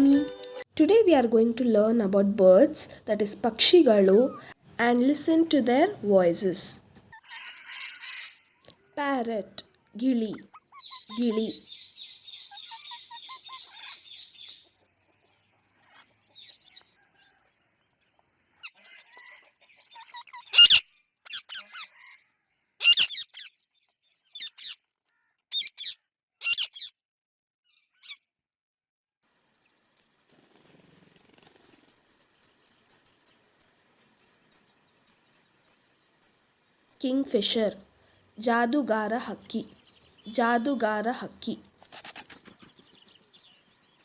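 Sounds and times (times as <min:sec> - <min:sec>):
parrot chirps and screeches: 0:10.5 - 0:11.2, 0:12.4 - 0:14.1, 0:18.7 - 0:23.5, 0:25.5 - 0:26.9, 0:39.1 - 0:43.2.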